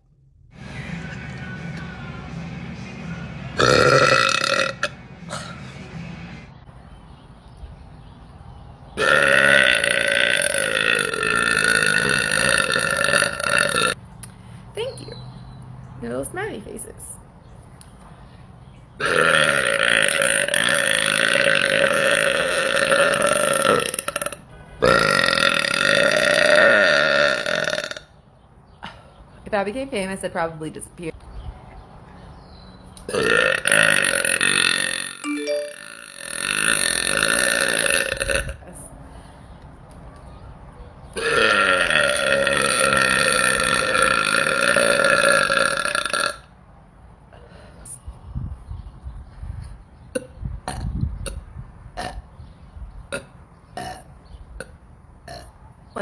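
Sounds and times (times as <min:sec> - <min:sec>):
woman burping loudly: 0:03.6 - 0:05.5, 0:09.0 - 0:14.0, 0:19.0 - 0:28.1, 0:33.1 - 0:38.6, 0:41.2 - 0:46.5, 0:50.2 - 0:51.4, 0:52.0 - 0:52.3.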